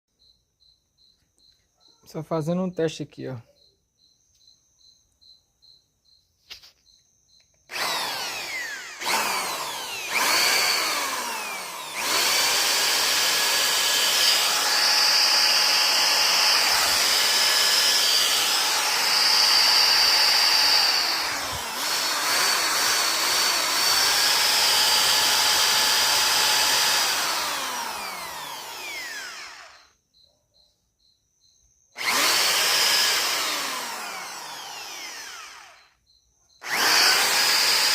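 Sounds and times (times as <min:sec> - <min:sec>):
crickets chirping: 0:00.1 - 0:09.0, 0:27.1 - 0:36.8
electric drill motor whine: 0:07.7 - 0:30.0, 0:32.0 - 0:36.0, 0:36.6 - 0:37.9.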